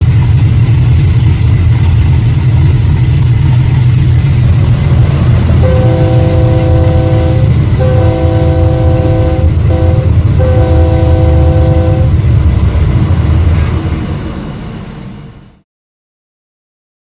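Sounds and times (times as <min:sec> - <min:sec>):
train rumbling: 0:00.0 - 0:15.6
train air horn blasts: 0:05.6 - 0:12.3.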